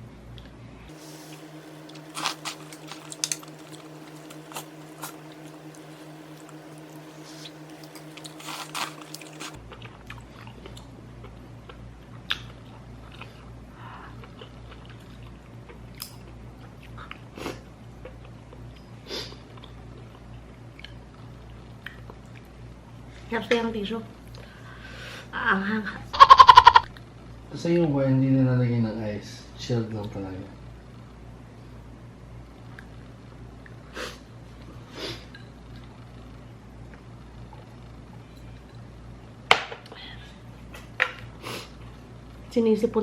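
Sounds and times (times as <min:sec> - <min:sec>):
steady low hum: 0:00.0 - 0:43.0
person chewing and biting food: 0:00.9 - 0:18.8.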